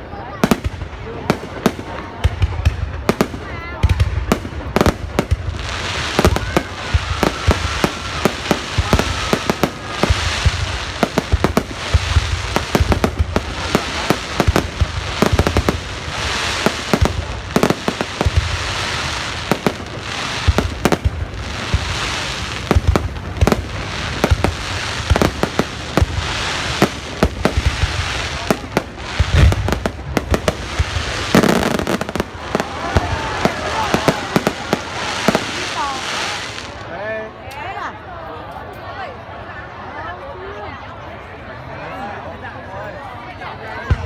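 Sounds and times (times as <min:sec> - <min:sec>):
fireworks bangs: 0:00.2 - 0:36.9
crackling hiss: 0:03.1 - 0:36.9.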